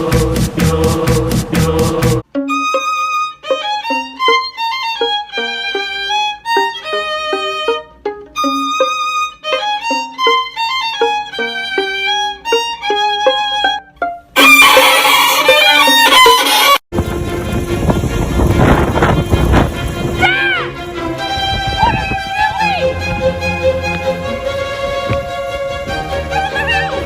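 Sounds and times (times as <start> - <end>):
violin playing quick melody: 0.0 - 27.0
loud harsh noise: 14.4 - 20.3.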